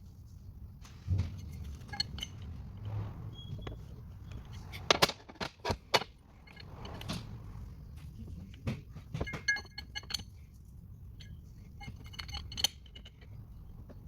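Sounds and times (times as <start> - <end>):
steel gear parts clinking: 1.3 - 7.7, 9.2 - 10.4, 11.1 - 13.8.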